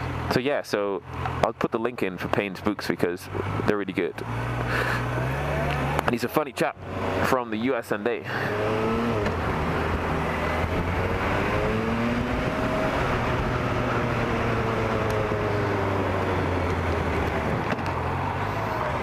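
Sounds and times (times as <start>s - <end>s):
wind and road noise: 0.0s - 19.0s
motorcycle engine running: 8.2s - 19.0s.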